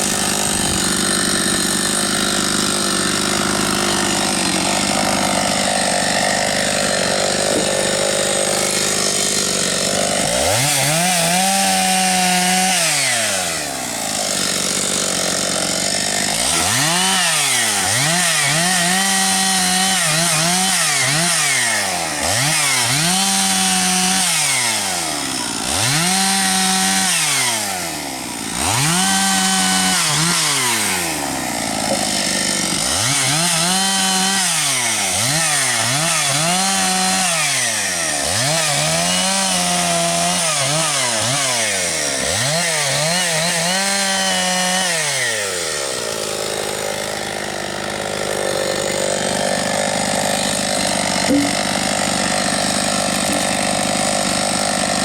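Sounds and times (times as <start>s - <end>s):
chainsaw revving: 0.0s - 55.0s.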